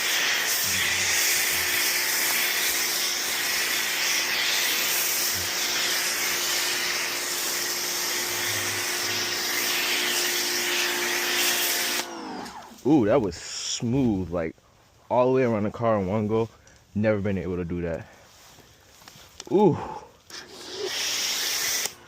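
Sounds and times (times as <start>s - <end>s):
pressure washer spray hissing: 0.0s - 12.1s, 20.3s - 22.0s.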